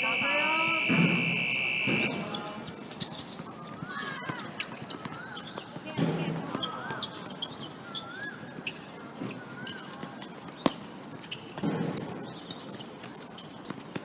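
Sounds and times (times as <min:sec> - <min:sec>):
shoes squeaking on court floor: 0:00.0 - 0:14.0
sharp ball impact: 0:00.8 - 0:02.3.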